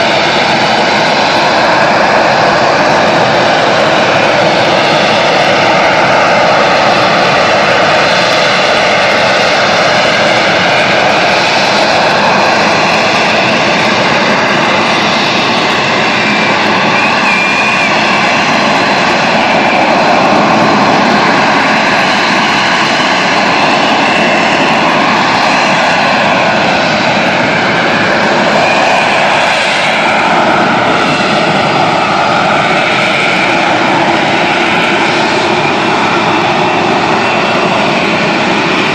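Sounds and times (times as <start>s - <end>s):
hovering jet roar: 0.0s - 38.9s.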